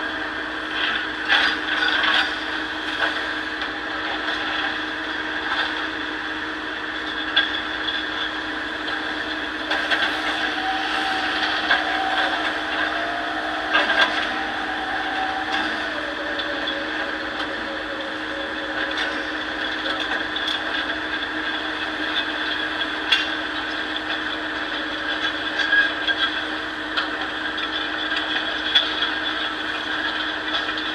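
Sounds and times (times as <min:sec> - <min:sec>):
hydraulic whine: 0:07.8 - 0:26.8.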